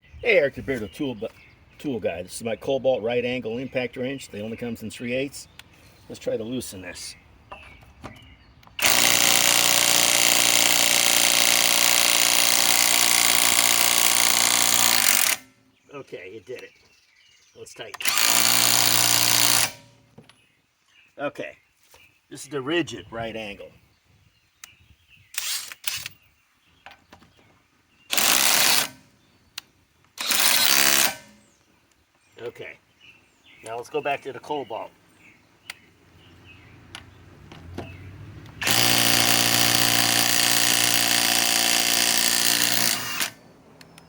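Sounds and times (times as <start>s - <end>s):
impact wrench hammering: 8.8s - 15.5s, 38.6s - 43.4s.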